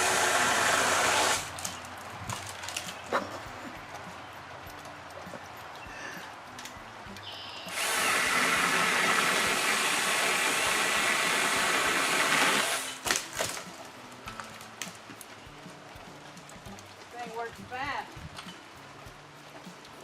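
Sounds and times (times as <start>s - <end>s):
electric pole saw cutting wood: 0.0s - 1.7s, 7.7s - 13.6s.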